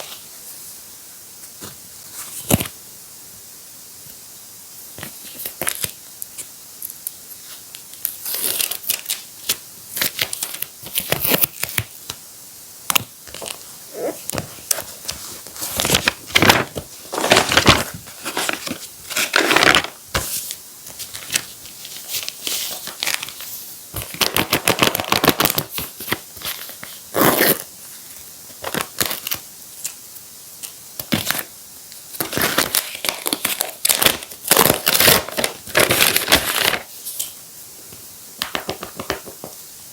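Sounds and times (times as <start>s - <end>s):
paper crinkling and tearing: 8.0s - 11.8s, 13.3s - 27.7s, 32.2s - 37.3s.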